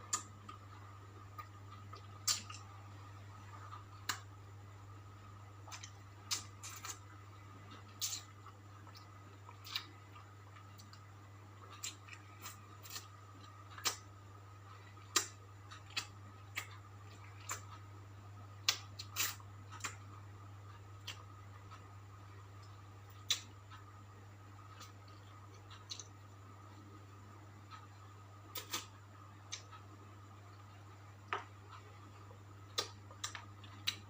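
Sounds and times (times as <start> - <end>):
eating crunches: 5.7 - 7.0, 11.7 - 14.1.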